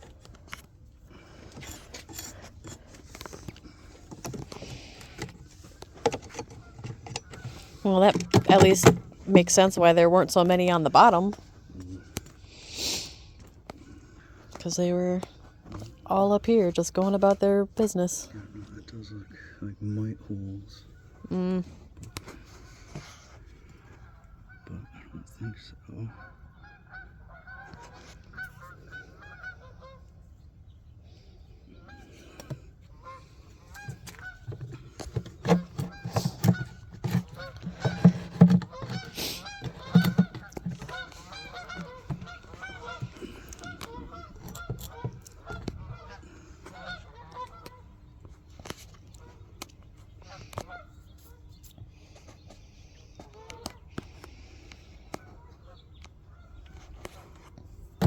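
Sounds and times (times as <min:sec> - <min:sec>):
geese honking: 0:26.0 - 0:30.3, 0:31.8 - 0:48.1.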